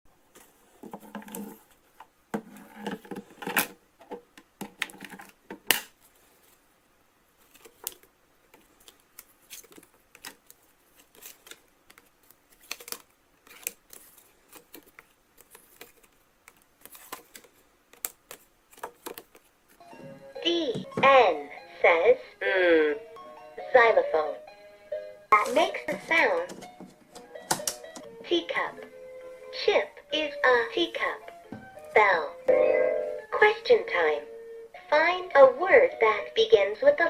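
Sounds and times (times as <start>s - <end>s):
scraping and rustling: 0.3s - 4.2s, 7.4s - 19.8s.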